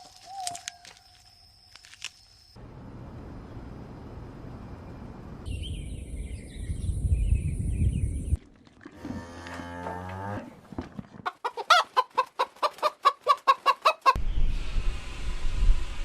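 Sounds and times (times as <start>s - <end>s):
chicken clucking: 11.2s - 14.2s.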